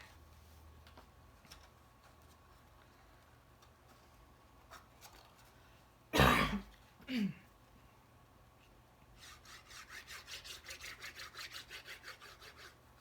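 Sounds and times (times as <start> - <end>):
person coughing: 6.1 - 7.5
person clearing throat: 6.2 - 7.5
scratchy rubbing on paper: 9.2 - 12.8.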